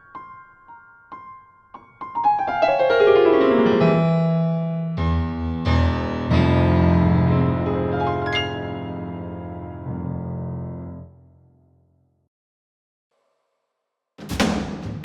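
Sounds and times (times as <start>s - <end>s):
piano-like keyboard music: 0.0s - 11.2s.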